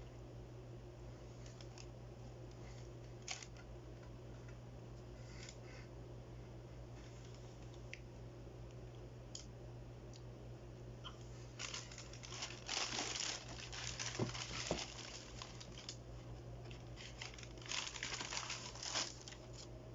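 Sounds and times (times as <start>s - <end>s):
paper crinkling and rustling: 11.4s - 19.7s.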